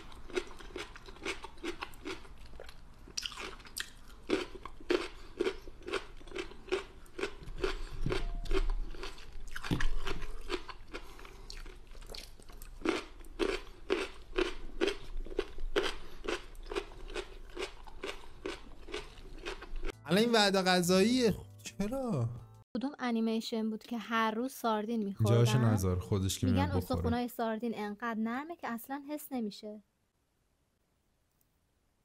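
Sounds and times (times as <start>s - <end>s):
chewing crunchy food: 0.0s - 20.0s.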